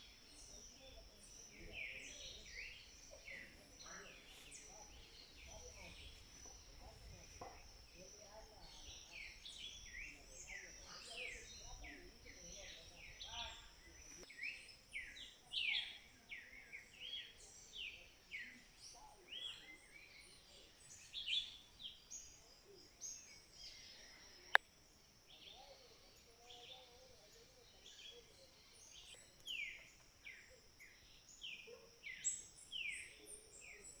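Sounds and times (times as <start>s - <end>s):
wild birds calling: 0.0s - 24.6s.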